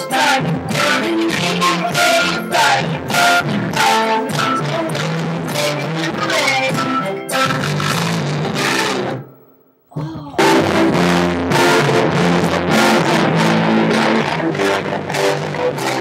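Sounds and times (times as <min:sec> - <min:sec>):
music with guitar and drums: 0:00.0 - 0:16.0.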